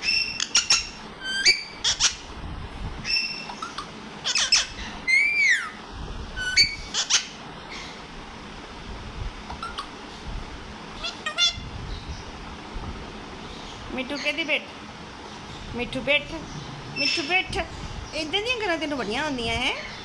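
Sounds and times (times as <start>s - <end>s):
parrot squawking and chirping: 0.0s - 2.3s, 3.0s - 5.8s, 6.4s - 8.0s, 11.0s - 11.7s.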